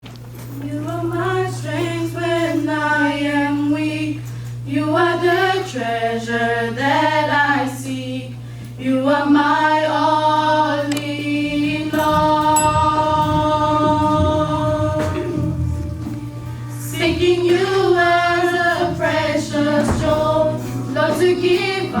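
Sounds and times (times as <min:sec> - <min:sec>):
choir singing gospel song: 0:00.6 - 0:22.0
low musical accompaniment: 0:10.6 - 0:22.0.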